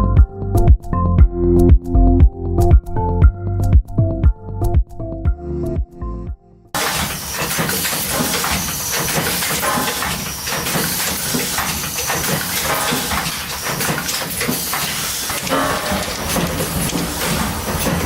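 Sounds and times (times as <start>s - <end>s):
industrial machinery clattering: 6.8s - 18.0s.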